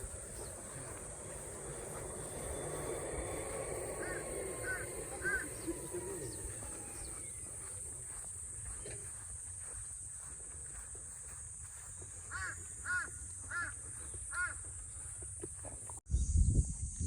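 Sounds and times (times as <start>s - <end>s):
crow cawing: 3.3s - 7.1s, 12.2s - 14.7s.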